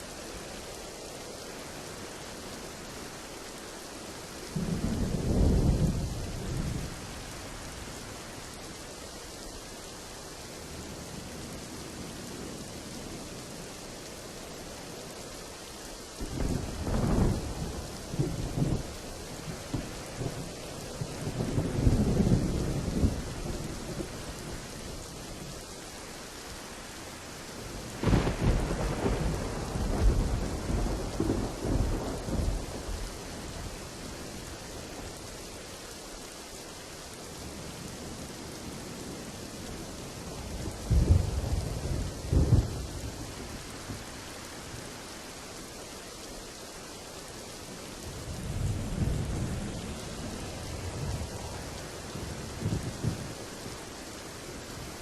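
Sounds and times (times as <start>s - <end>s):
steady rain hiss: 0.0s - 55.0s
thunder rumbling: 4.5s - 8.4s, 16.2s - 25.5s, 27.6s - 35.2s, 37.4s - 45.1s, 48.0s - 55.0s.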